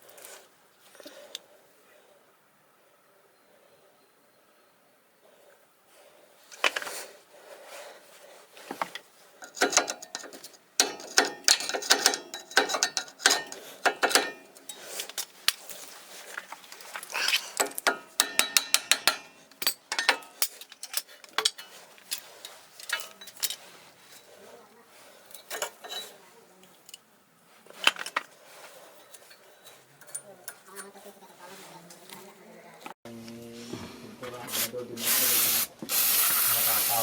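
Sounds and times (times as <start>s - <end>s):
metal clinks and knocks: 8.8s - 15.6s, 16.4s - 24.3s.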